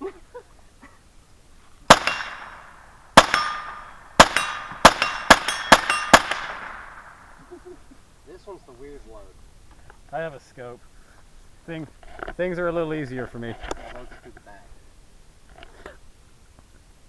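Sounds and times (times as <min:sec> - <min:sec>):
steel target ringing: 0:01.9 - 0:07.3
rifle shots: 0:01.9 - 0:07.4.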